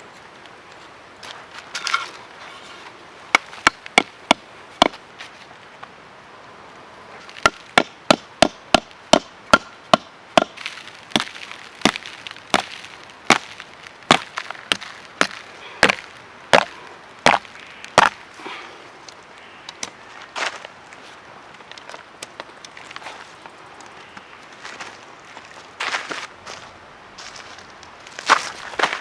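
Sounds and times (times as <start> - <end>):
chopping strikes on wood: 3.4 - 5.0, 7.4 - 12.7, 14.1 - 17.4, 18.0 - 18.2.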